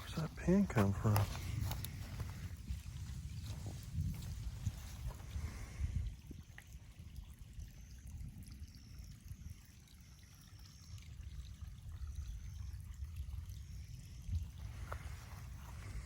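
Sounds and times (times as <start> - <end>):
steady low rumble: 0.0 - 6.6
water trickling down a creek: 0.0 - 16.0.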